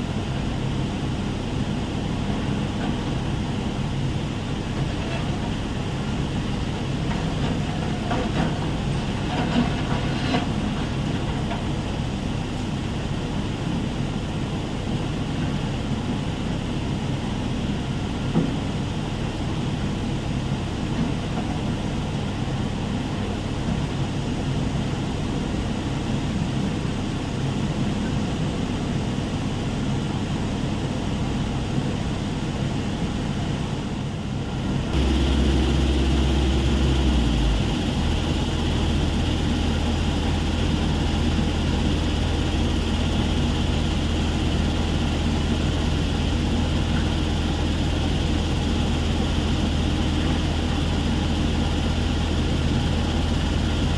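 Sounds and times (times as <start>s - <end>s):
stone crusher machinery drone: 35.0s - 53.9s.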